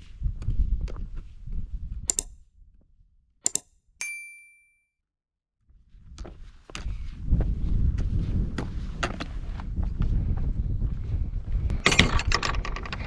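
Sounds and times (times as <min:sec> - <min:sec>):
clicking steps: 0:02.1 - 0:02.3
sharp clicks: 0:02.1 - 0:02.4, 0:03.5 - 0:03.7
bright metallic ding: 0:03.5 - 0:04.9
wind buffeting microphone: 0:06.1 - 0:13.0.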